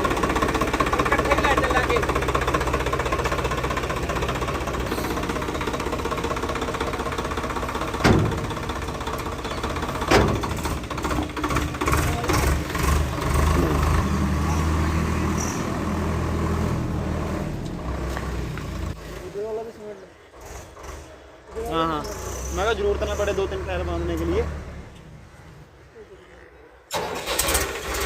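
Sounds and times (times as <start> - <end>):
tractor diesel engine idling: 0.0 - 24.5, 26.9 - 28.0
sharp metallic knocks: 8.0 - 8.7.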